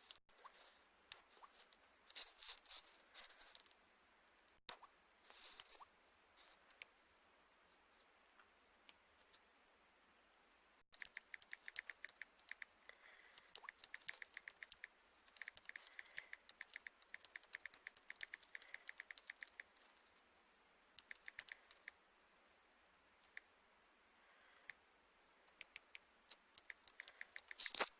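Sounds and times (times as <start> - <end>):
rapid sharp clicking: 10.9 - 12.8, 13.4 - 19.8, 21.0 - 22.0, 25.5 - 27.9.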